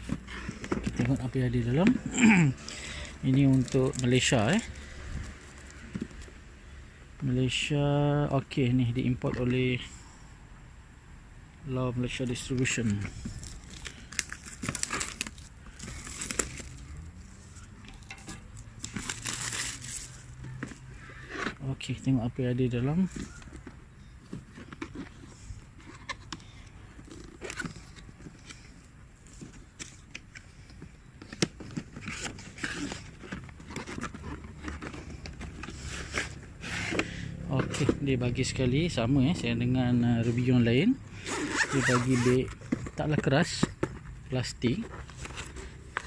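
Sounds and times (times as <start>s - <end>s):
cardboard box being opened: 3.2s - 6.3s, 12.8s - 21.6s, 31.2s - 38.0s.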